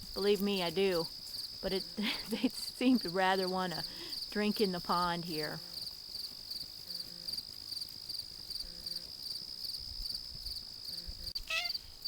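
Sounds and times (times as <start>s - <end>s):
crickets chirping: 0.0s - 12.0s
cat meowing: 11.4s - 11.8s.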